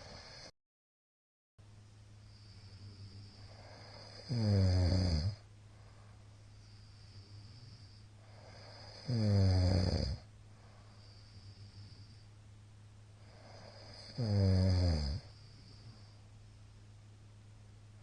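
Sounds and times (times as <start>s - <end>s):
man snoring loudly: 0.0s - 0.5s, 2.3s - 5.4s, 7.0s - 10.3s, 13.3s - 15.8s
steady low hum: 1.6s - 18.0s.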